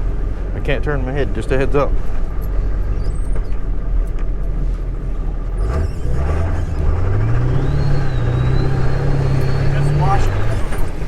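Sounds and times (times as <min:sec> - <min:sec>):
diesel engine running: 0:00.0 - 0:11.0
turbo whistle: 0:07.4 - 0:10.2.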